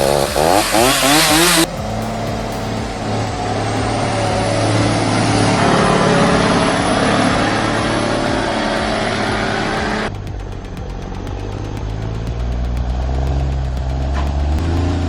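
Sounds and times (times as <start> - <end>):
engine running hard: 0.0 - 15.0.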